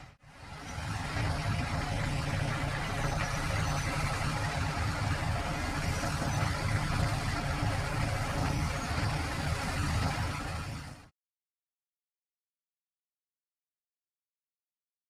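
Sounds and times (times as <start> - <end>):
combine harvester running: 0.0 - 11.1.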